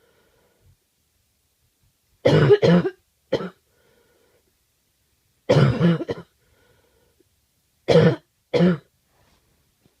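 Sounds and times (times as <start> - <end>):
person coughing: 2.2 - 3.6, 5.5 - 6.4, 7.9 - 8.9.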